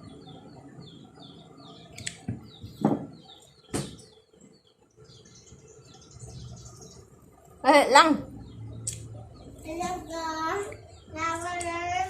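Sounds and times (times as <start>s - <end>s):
small birds chirping: 0.0s - 12.0s
sharp knocks and clatters: 2.2s - 4.2s.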